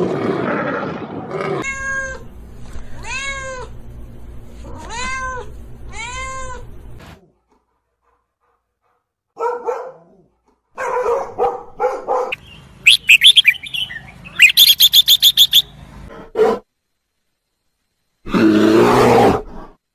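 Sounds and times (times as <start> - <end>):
animal barking: 9.4 - 16.7
bird chirping: 12.1 - 15.9.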